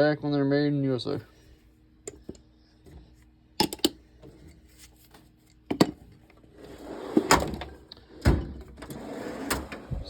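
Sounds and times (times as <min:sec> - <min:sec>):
drawer running out on slides: 0:06.5 - 0:10.0.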